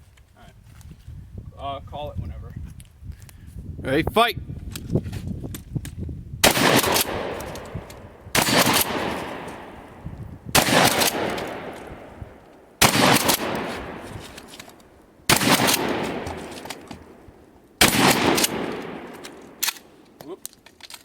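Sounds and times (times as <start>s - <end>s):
shotgun blasts with echo: 6.4s - 20.2s.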